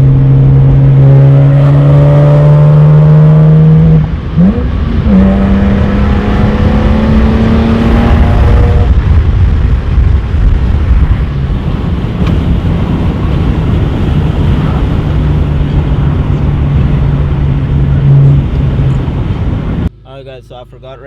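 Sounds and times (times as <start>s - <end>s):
low exhaust drone: 0.0s - 21.0s
wind and road rumble: 0.0s - 21.0s.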